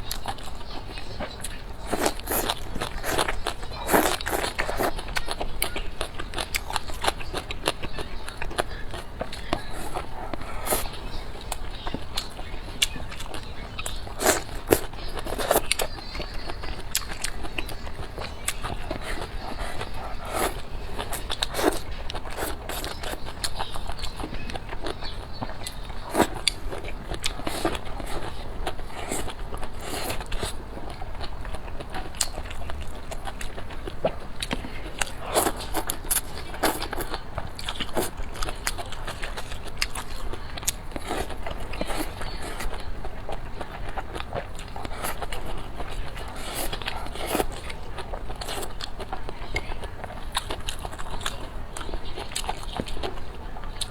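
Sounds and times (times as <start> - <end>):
person biting and chewing: 1.9 - 5.8, 8.4 - 11.6, 12.8 - 24.9, 25.7 - 30.6, 33.3 - 48.8.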